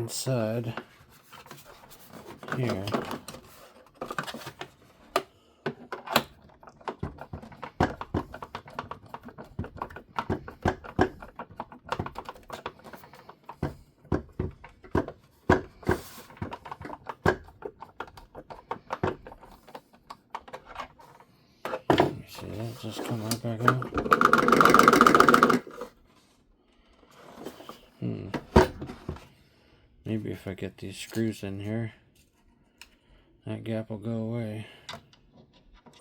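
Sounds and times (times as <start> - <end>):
plastic toy parts clicking: 23.6 - 25.9.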